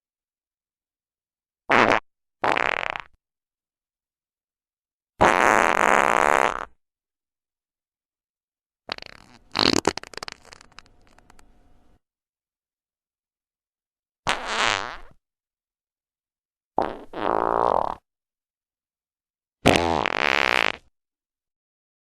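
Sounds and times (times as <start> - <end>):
fart sound effects: 1.7 - 3.2, 5.2 - 6.8, 8.9 - 11.2, 14.3 - 15.2, 16.8 - 18.0, 19.6 - 20.9.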